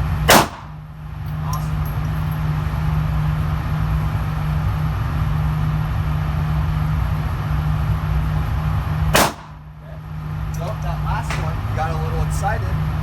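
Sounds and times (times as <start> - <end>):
constant low hum: 0.0 - 13.0
low mechanical rumble: 0.0 - 13.0.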